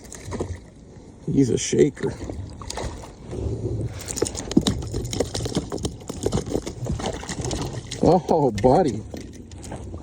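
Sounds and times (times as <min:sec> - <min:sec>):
fish thrashing against kayak: 0:02.1 - 0:10.0.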